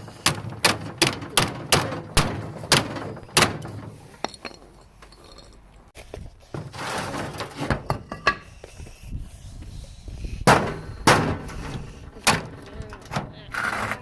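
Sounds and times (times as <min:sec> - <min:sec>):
loud sharp bangs: 0:00.1 - 0:04.0, 0:10.4 - 0:11.6.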